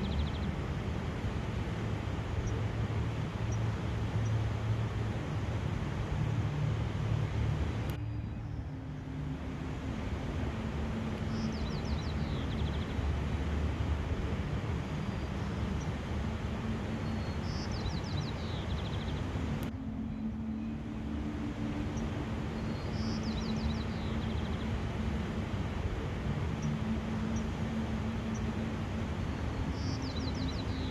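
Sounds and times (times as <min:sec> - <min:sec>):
faint hum: 0:00.0 - 0:30.9
steady outdoor rushing noise: 0:00.0 - 0:30.9.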